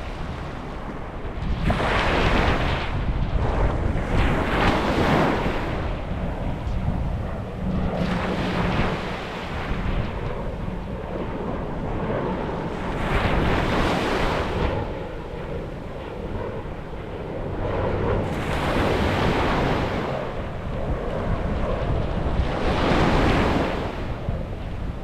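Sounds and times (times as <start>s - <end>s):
sea waves breaking on beach: 4.2s - 6.0s, 12.7s - 14.9s, 18.2s - 20.4s, 22.4s - 24.2s.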